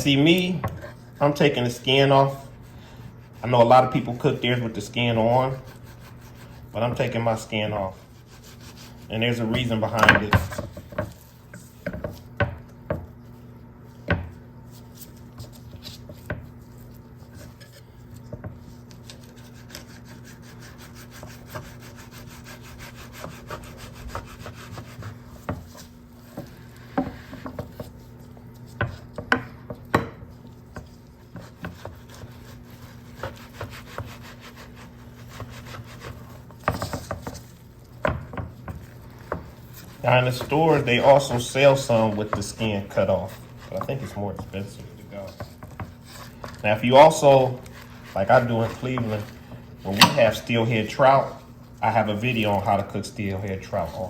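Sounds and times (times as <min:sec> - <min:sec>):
steady low hum: 0:00.0 - 0:54.0
knife scraping fish skin: 0:05.5 - 0:06.7, 0:07.9 - 0:09.2, 0:14.7 - 0:29.3, 0:30.5 - 0:50.6.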